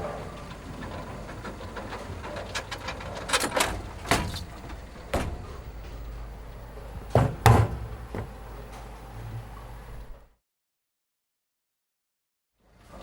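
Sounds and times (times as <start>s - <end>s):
steady low hum: 0.0s - 10.4s
sharp knocks and thumps: 3.9s - 6.1s, 7.0s - 8.4s.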